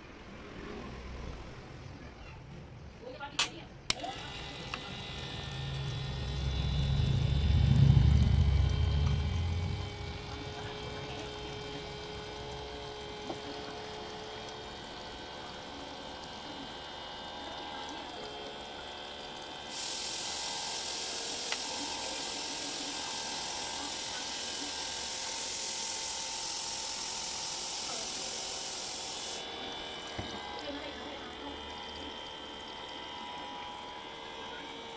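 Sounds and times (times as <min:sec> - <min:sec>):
small motor whining: 0:03.9 - 0:34.9
low rumble: 0:05.3 - 0:12.7.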